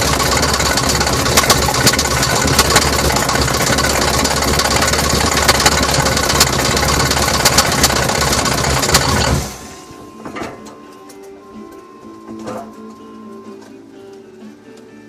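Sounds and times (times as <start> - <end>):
sharp engine tapping: 0.0 - 9.6
engine running: 0.0 - 10.8.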